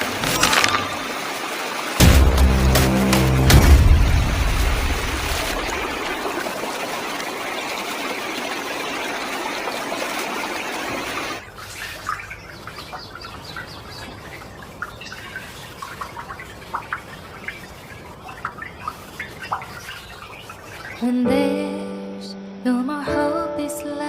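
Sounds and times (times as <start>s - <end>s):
waterfall rushing: 0.0s - 11.4s
water dripping: 0.0s - 21.5s
low thump: 2.0s - 5.0s.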